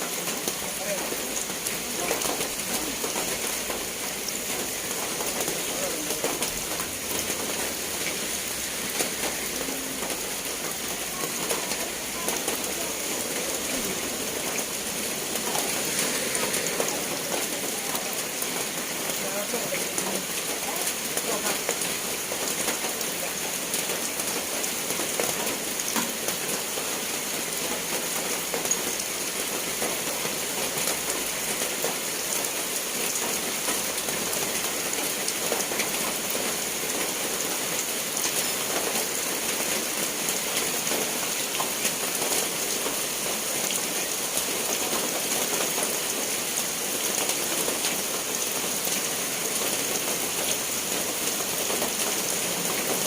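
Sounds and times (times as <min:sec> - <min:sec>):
rain pattering on surfaces: 0:00.0 - 0:53.0.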